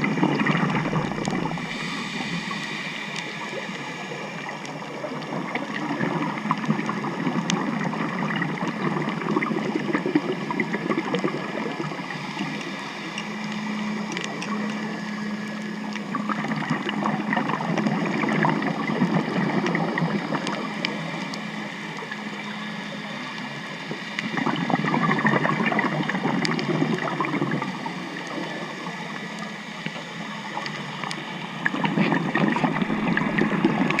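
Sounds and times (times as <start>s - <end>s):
crackling hiss: 0.0s - 34.0s
faint steady tones: 0.0s - 34.0s
underwater boat motor drone: 0.0s - 34.0s.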